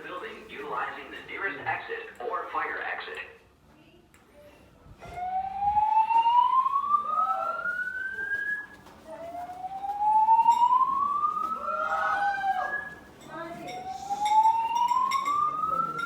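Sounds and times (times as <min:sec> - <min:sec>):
rising whoop evacuation tone: 0:05.1 - 0:08.7, 0:09.6 - 0:13.1.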